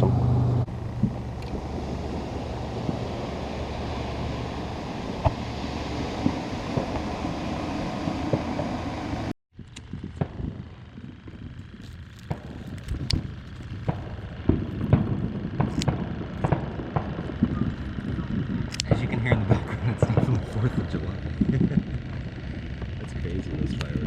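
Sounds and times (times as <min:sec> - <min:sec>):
distant fireworks popping: 0:00.7 - 0:08.8, 0:09.6 - 0:24.0
aerator bubbling hiss and hum: 0:00.7 - 0:09.3.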